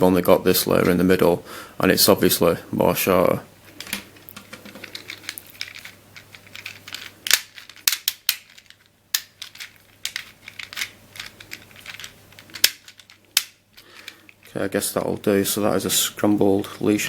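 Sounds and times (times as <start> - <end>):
plastic puzzle tiles clicking: 3.9 - 14.6.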